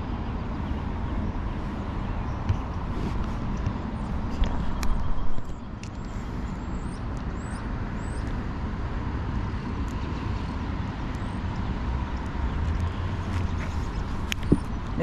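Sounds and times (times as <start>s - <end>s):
road traffic noise: 0.0s - 15.0s.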